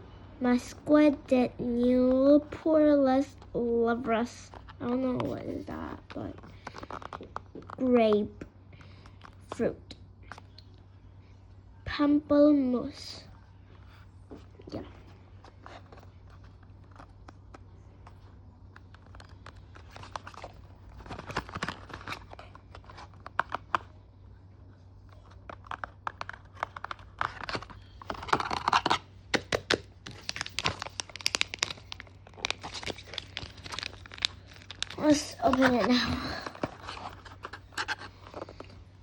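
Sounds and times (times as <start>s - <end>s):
packaging crinkling and tearing: 6.0s - 7.8s, 18.8s - 23.8s, 25.1s - 38.7s.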